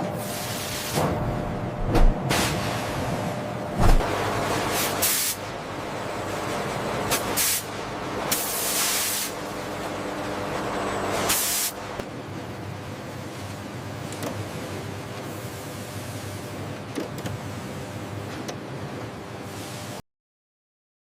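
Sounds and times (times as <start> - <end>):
factory machinery hum: 0.0 - 20.0
hissing air bursts: 4.7 - 5.5, 7.1 - 9.4, 11.3 - 11.8.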